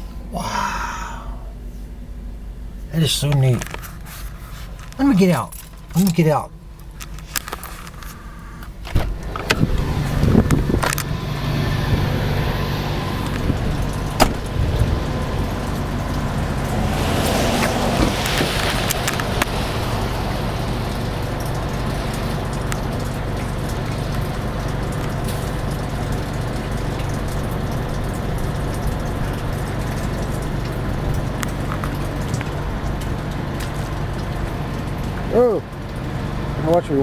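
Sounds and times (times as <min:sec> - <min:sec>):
faint hum: 0:00.0 - 0:09.6
low vehicle rumble: 0:00.0 - 0:37.0.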